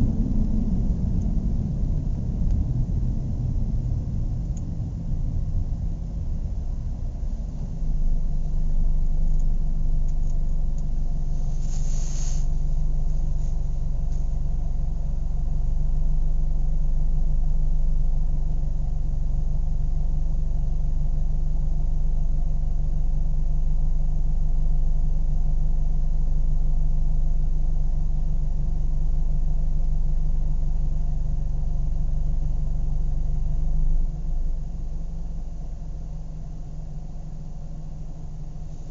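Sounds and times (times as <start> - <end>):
car engine idling: 0.0 - 23.1, 27.4 - 38.9
brief hiss: 11.3 - 13.6.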